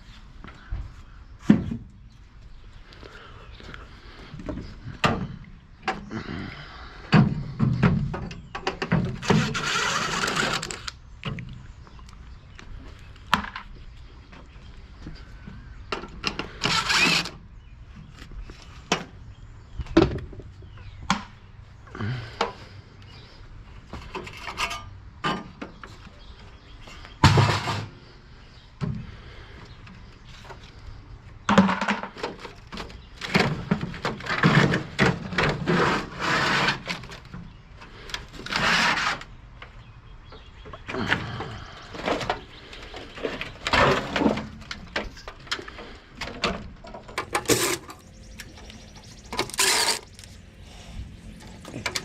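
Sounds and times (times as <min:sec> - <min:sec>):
short scraping noises: 0:34.2 - 0:37.3, 0:38.0 - 0:39.3, 0:49.1 - 0:52.0.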